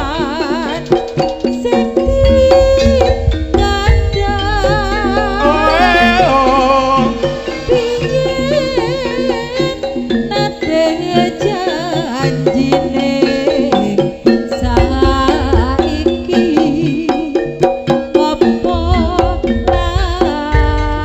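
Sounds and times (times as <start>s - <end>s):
hand drums: 0.0s - 21.0s
struck percussion: 0.0s - 21.0s
wavering melody line: 0.2s - 21.0s
heavy low-pitched swell: 2.0s - 9.5s.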